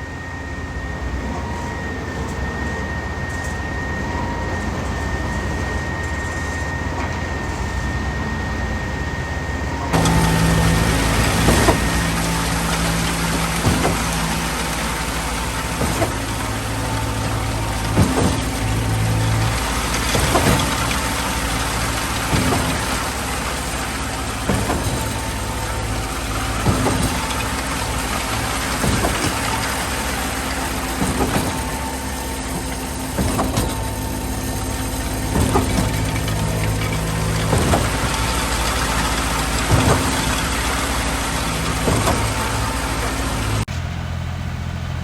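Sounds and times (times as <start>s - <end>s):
diesel engine high drone: 0.0s - 45.0s
concrete pump piston clunk: 9.9s - 43.8s.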